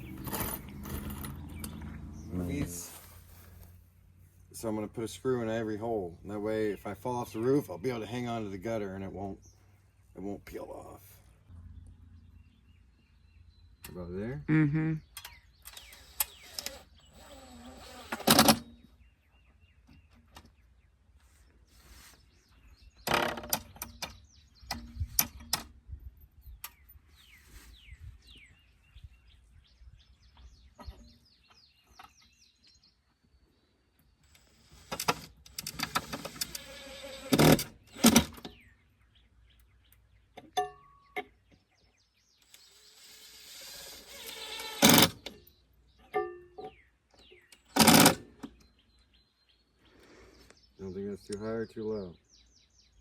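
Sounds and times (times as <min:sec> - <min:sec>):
cordless drill whirring: 0:15.7 - 0:18.6, 0:34.4 - 0:38.3, 0:42.5 - 0:45.2.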